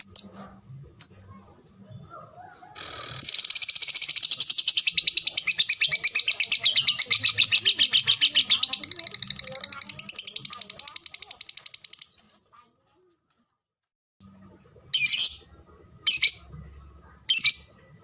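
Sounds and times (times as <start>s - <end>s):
lovebird chirping and trilling: 2.8s - 12.2s, 14.9s - 15.4s, 16.1s - 16.5s, 17.3s - 17.7s.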